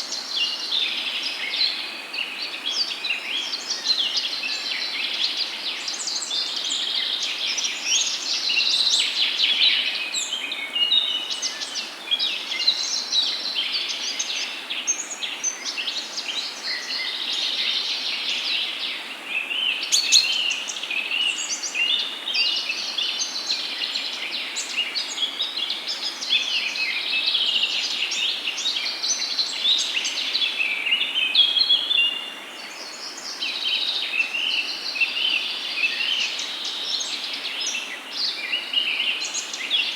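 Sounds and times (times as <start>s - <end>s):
steady background hiss: 0.0s - 39.9s
birds chirping and trilling: 19.4s - 22.7s.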